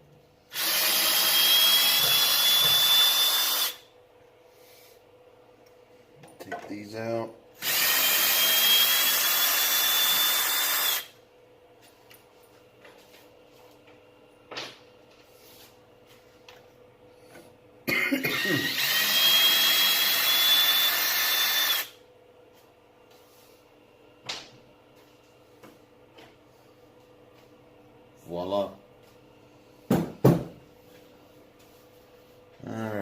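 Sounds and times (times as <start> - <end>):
power drill whining: 0.5 - 3.9, 7.6 - 11.1, 18.6 - 22.0.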